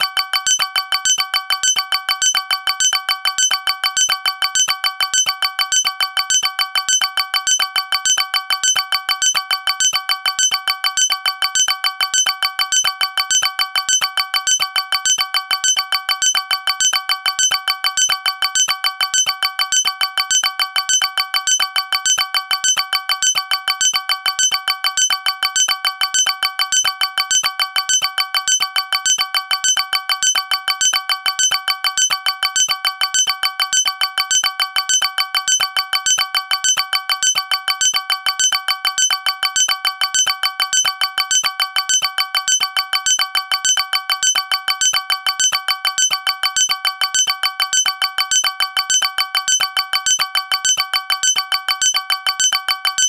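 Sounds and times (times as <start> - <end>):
electronic alarm tone: 0.0 - 2.7.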